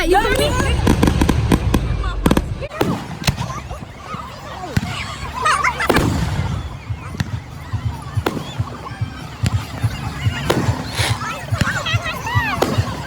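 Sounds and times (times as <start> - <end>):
fireworks bang: 0.0 - 3.6
fireworks cracking: 0.0 - 3.8
low popping thumps: 0.0 - 4.0.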